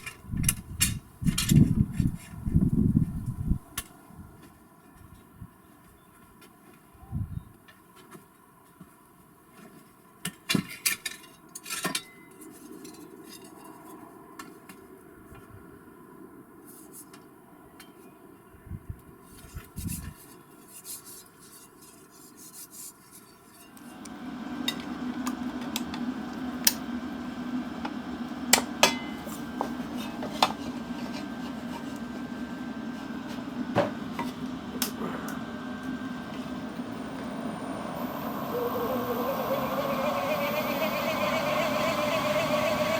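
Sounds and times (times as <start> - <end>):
milling machine humming: 23.8 - 42.9.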